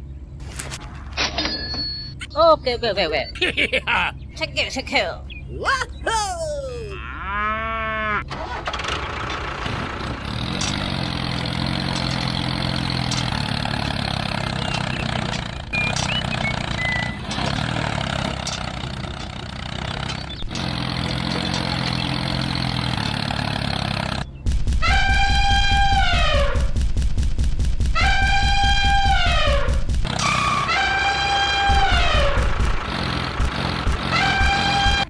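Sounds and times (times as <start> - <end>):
heavy vehicle engine running: 8.3 - 35.0
loud horn-like call: 28.0 - 32.6, 34.0 - 35.0.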